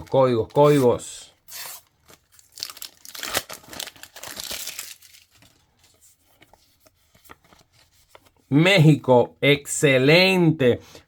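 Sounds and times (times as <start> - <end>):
packet tearing open: 1.5 - 5.6
wrapper crinkling: 1.5 - 6.5.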